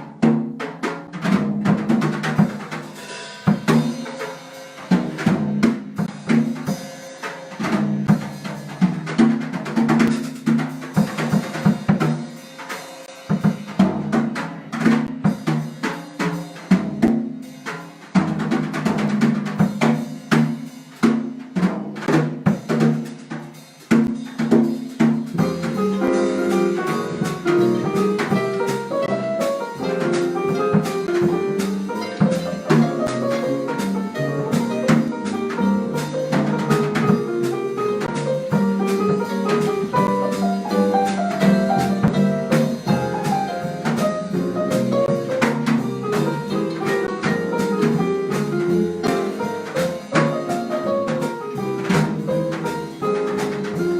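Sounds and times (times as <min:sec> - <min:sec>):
drum kit snare and kick hits: 0:00.0 - 0:53.9
jazz band playing: 0:00.0 - 0:53.9
pitched melody notes: 0:25.4 - 0:35.9.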